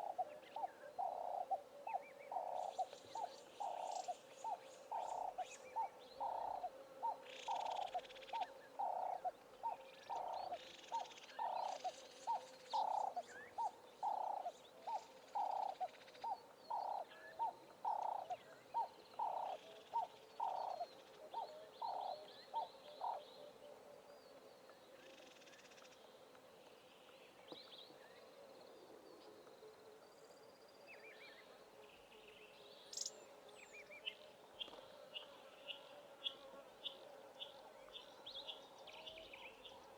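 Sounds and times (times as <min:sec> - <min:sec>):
bird cooing: 0:00.0 - 0:23.3.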